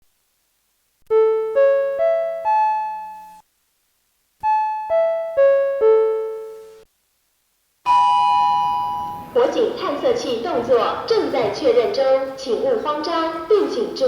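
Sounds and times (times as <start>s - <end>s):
fire alarm chime notes: 7.9s - 9.4s.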